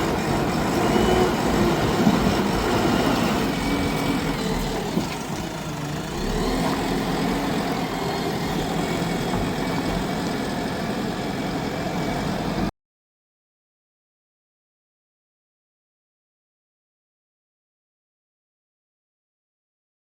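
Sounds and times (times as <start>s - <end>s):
diesel engine running: 0.0s - 12.7s.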